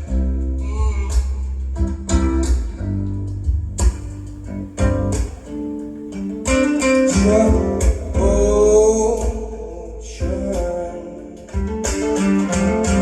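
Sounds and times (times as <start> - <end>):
deep bass: 0.0 - 11.8
folk-blues song over loudspeakers: 0.0 - 13.0
plucked acoustic guitar: 3.8 - 13.0
person singing: 6.3 - 11.6.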